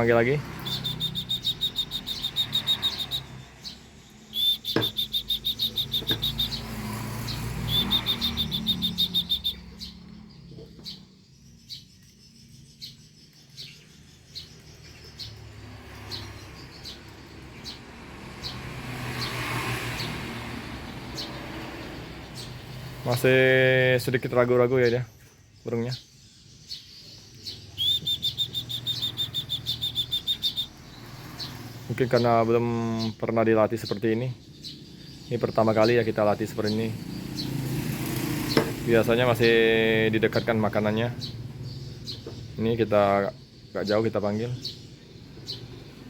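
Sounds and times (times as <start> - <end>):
pulsed chirping bird call trills: 0.0 - 15.4, 26.7 - 32.2
short bird chirps: 0.6 - 6.7, 7.3 - 10.0, 27.4 - 30.8.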